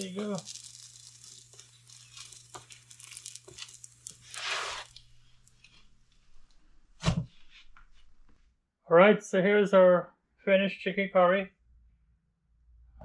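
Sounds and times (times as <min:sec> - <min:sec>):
bread tearing and crackling: 0:00.0 - 0:06.0.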